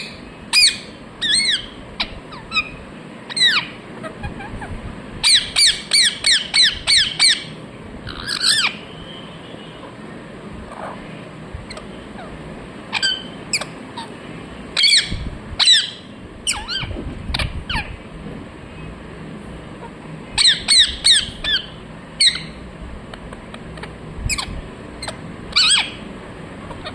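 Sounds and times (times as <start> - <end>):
parrot squawking: 0.0 - 8.9, 11.7 - 14.2, 14.8 - 17.9, 19.8 - 22.6, 24.3 - 26.1.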